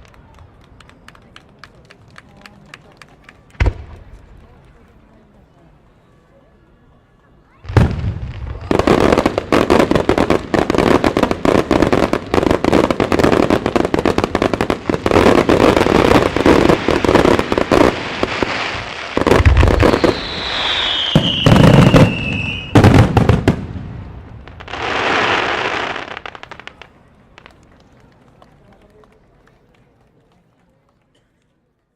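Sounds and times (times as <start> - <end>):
fireworks cracks and bangs: 3.3 - 5.0, 7.6 - 28.1
fireworks booms: 3.5 - 4.5, 7.6 - 26.9
falling whistle: 19.9 - 22.8.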